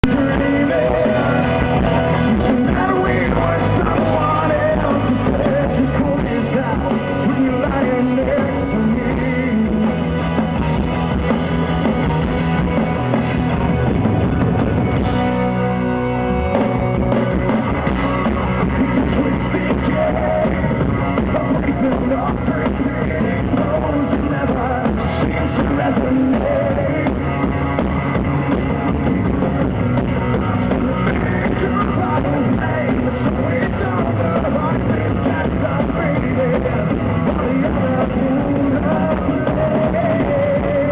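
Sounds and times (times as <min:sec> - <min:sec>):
rock band playing live: 0:00.0 - 0:40.9.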